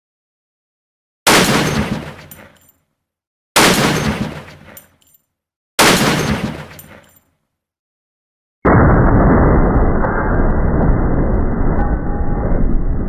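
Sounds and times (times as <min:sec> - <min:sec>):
rifle gunshots: 0:01.3 - 0:02.5, 0:03.6 - 0:04.8, 0:05.8 - 0:07.0.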